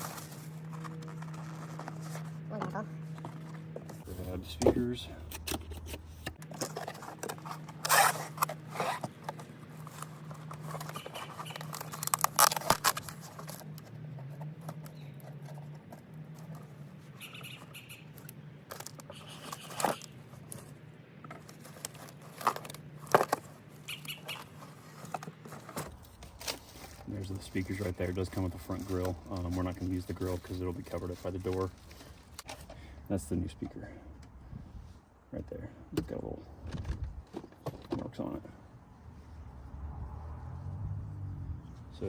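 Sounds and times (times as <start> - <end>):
packaging and parts rustling: 0.0 - 17.7, 18.7 - 32.8.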